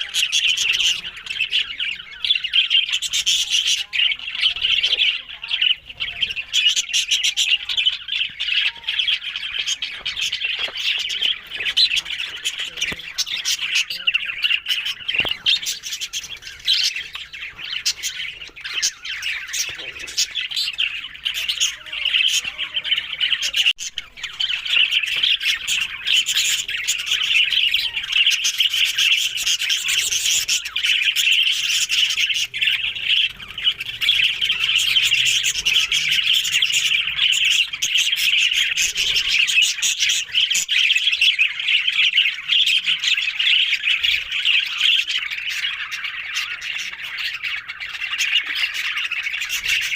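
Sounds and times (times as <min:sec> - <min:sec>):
parrots chattering and squawking: 0:00.0 - 0:49.9.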